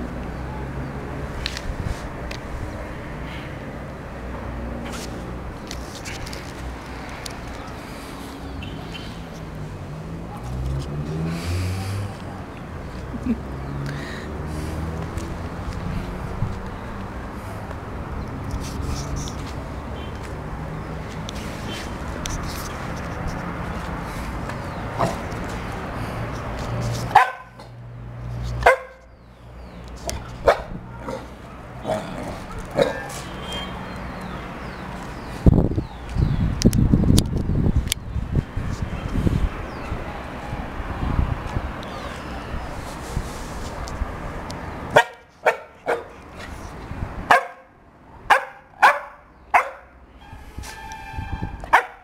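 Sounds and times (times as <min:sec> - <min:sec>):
dog barking: 0:27.1 - 0:27.8, 0:28.6 - 0:29.1, 0:30.4 - 0:33.2, 0:44.9 - 0:46.2, 0:47.3 - 0:47.7, 0:48.3 - 0:49.9, 0:51.7 - 0:52.0.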